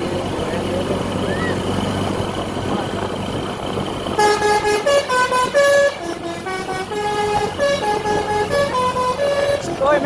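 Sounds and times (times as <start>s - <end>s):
rumble of engines and traffic: 0.0s - 10.0s
multi-tone musical bus horn: 4.1s - 10.0s.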